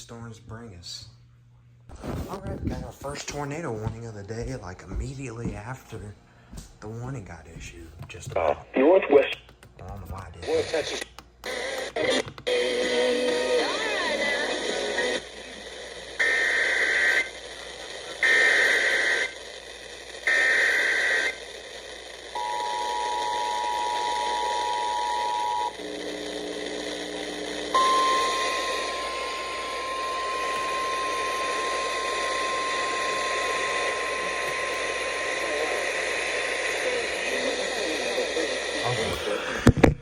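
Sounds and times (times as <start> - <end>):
radio static hiss: 1.9 - 4.0, 7.0 - 40.0
two-tone attention signal: 27.7 - 32.7
steady single-pitch alert tone: 27.7 - 33.2.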